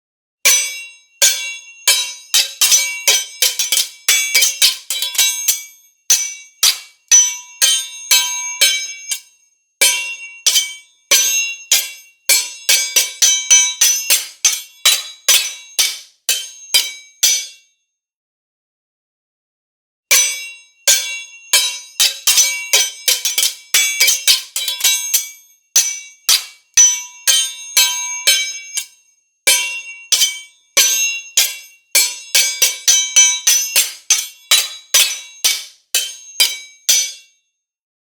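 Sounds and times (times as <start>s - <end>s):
metal sword blades clashing: 0.5s - 17.6s, 20.1s - 37.3s.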